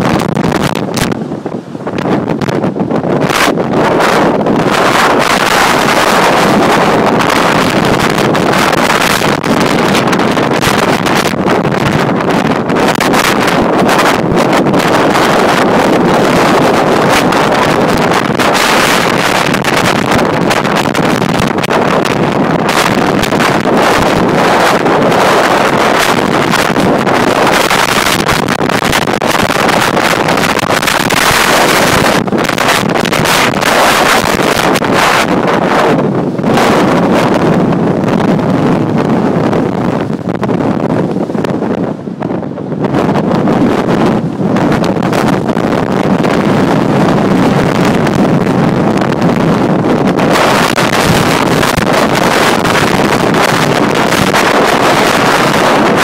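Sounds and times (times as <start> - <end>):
storm wind buffeting microphone: 0.0 - 56.0.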